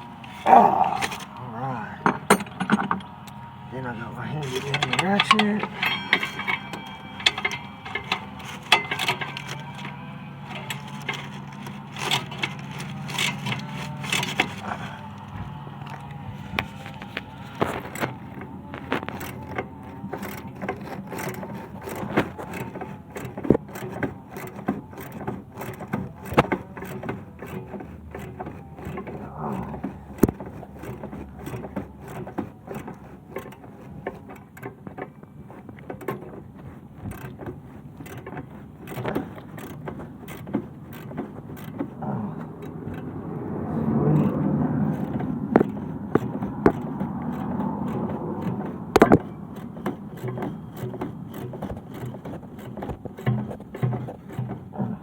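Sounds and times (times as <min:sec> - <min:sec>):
metal tools clinking: 0:00.0 - 0:41.9.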